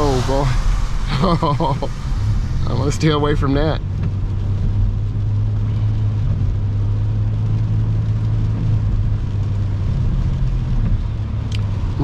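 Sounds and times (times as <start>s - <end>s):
hiss of water spray: 0.0s - 3.7s
road and tyre noise: 0.0s - 12.0s.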